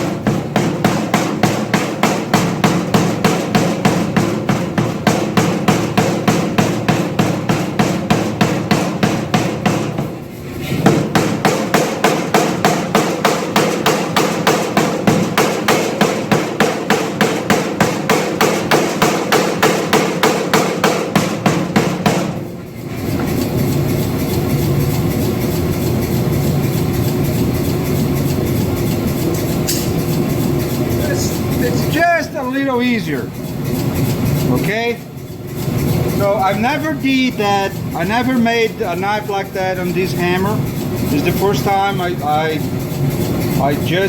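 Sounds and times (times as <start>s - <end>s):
power hammer striking steel: 0.0s - 23.5s
steady running hum: 0.0s - 44.0s.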